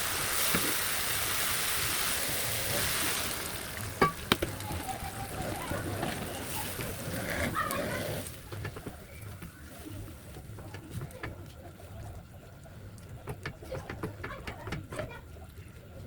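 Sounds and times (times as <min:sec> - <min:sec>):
stew sizzling in a pan: 0:00.0 - 0:06.9.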